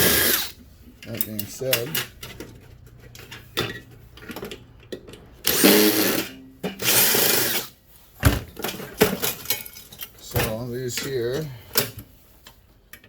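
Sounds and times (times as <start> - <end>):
power drill spinning: 0.0 - 0.6, 5.4 - 7.7.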